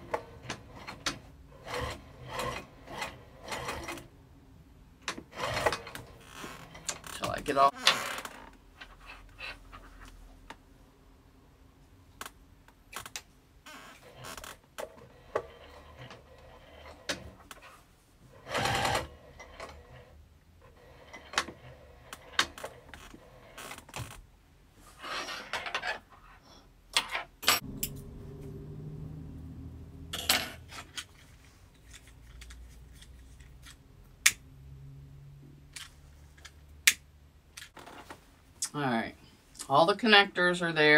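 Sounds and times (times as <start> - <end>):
sewing machine stitching: 0.0 - 4.1, 5.3 - 7.1, 18.4 - 20.1.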